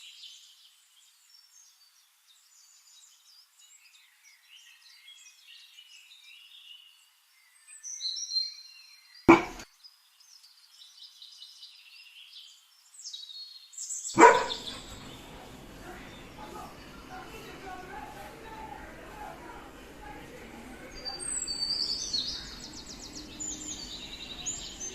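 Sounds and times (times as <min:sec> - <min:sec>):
birds chirping: 0:09.3 - 0:09.6, 0:14.2 - 0:24.9.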